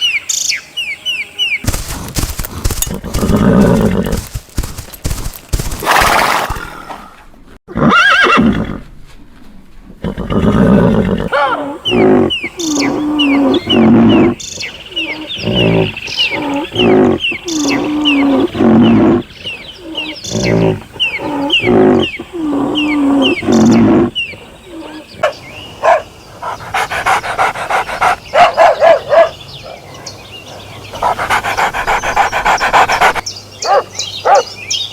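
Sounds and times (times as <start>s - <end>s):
dog panting fast: 1.7s - 5.8s, 26.4s - 28.6s, 30.9s - 33.3s
horse whinnying: 2.6s - 4.3s, 7.7s - 8.8s
bark-like pulses: 24.9s - 29.8s, 30.9s - 34.5s.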